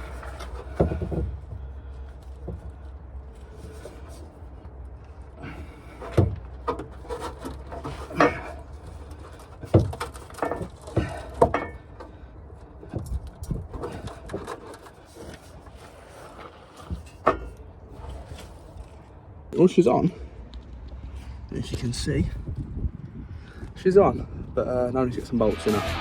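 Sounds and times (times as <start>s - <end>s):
metallic knocks and clunks: 0.0s - 2.8s, 5.8s - 12.2s, 12.8s - 18.4s
metal scraping: 12.8s - 19.0s, 25.3s - 26.0s.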